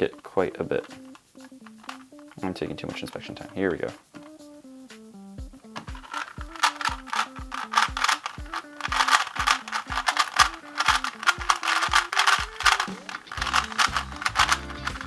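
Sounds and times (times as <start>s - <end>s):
background music with steady beat: 0.0s - 15.0s
puzzle cube clicking: 0.8s - 4.4s, 5.8s - 15.0s.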